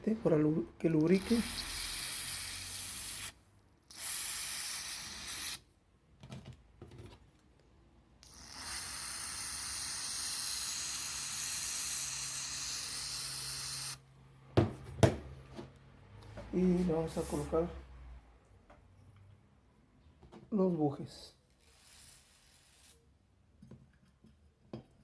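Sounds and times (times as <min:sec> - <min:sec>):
aerosol spray hissing: 0:01.2 - 0:05.6, 0:08.2 - 0:14.0, 0:21.6 - 0:23.0.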